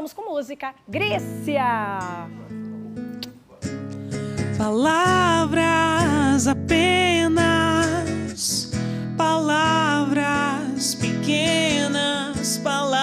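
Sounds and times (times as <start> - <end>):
guitar: 0.8 - 13.0
woman singing: 4.5 - 13.0.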